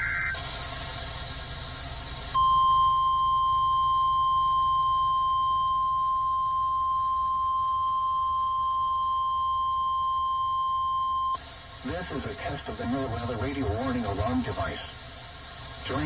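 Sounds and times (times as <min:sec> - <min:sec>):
steady alarm tone: 0:00.0 - 0:00.4, 0:02.4 - 0:11.4
radio hiss: 0:10.8 - 0:16.0.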